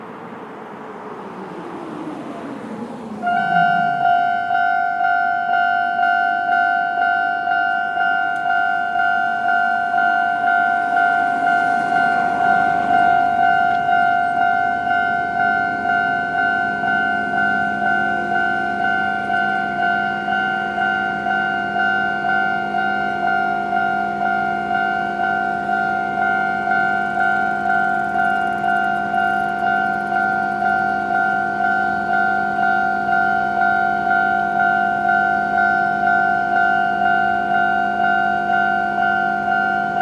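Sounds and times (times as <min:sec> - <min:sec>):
low tones: 0:01.2 - 0:06.0, 0:07.7 - 0:40.0
tone falling in pitch: 0:03.2 - 0:05.0
level-crossing alarm ringing: 0:03.2 - 0:40.0.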